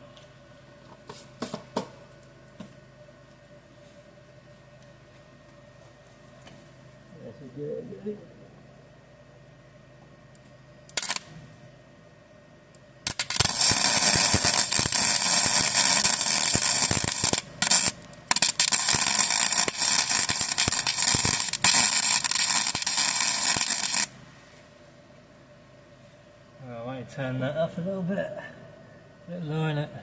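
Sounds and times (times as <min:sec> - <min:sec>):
welder arc crackling: 0:10.9 - 0:11.4, 0:13.0 - 0:24.2.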